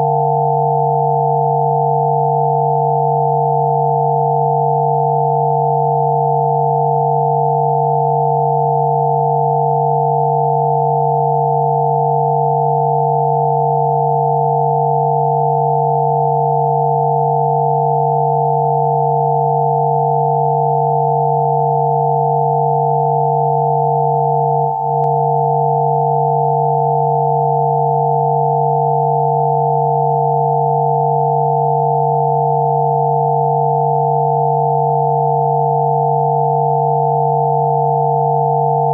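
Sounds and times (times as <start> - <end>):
layered electronic sine tones: 0.0 - 38.9.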